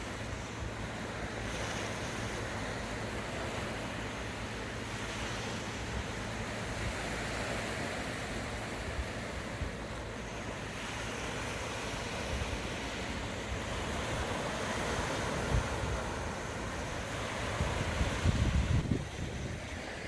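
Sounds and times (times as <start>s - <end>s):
sea waves washing onto shore: 0.0s - 20.0s
wind rumbling on microphone: 4.8s - 20.0s.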